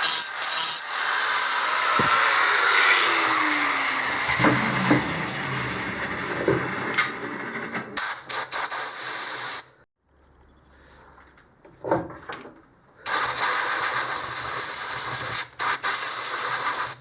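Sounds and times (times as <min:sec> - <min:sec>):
angle grinder grinding stone: 0:00.0 - 0:08.0.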